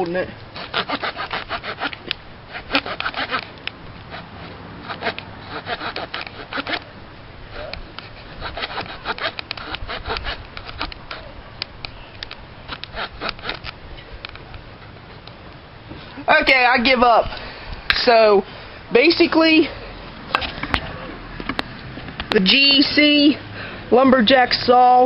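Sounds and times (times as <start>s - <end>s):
small saw cutting log: 0.5s - 6.9s, 7.5s - 11.4s, 12.6s - 13.8s.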